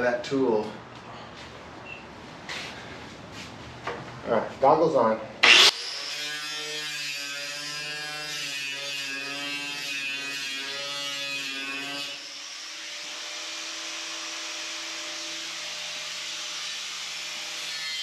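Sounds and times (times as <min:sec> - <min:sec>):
power tool motor whine: 0:05.4 - 0:06.5.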